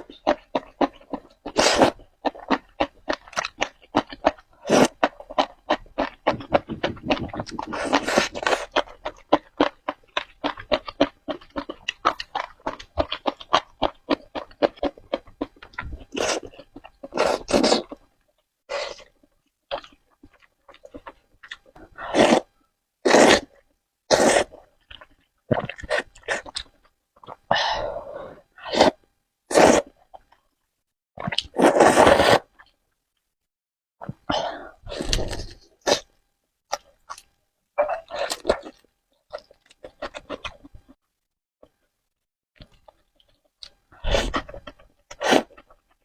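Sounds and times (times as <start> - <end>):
wet chewing: 0.0 - 18.1, 19.0 - 22.5, 24.4 - 27.4, 36.7 - 41.0.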